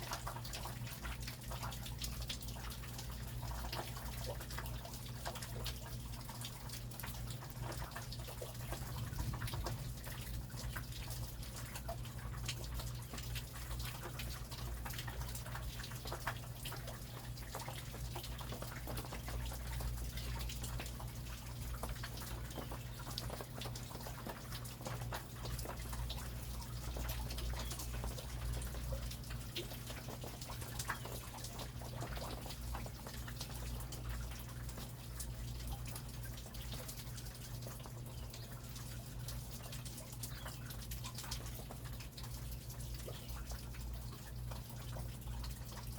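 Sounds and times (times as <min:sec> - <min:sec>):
raindrops ticking: 0:00.0 - 0:45.9
low rain rumble: 0:08.4 - 0:15.8.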